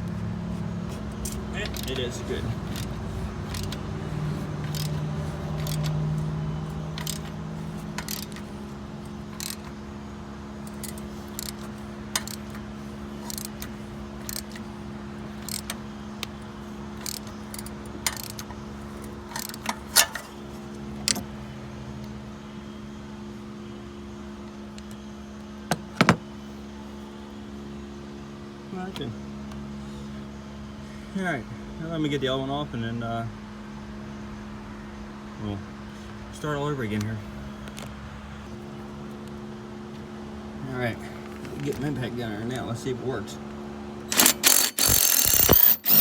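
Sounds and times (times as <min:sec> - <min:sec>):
steady low hum: 0:00.0 - 0:46.0
metallic clinks of hand tools: 0:44.1 - 0:46.0.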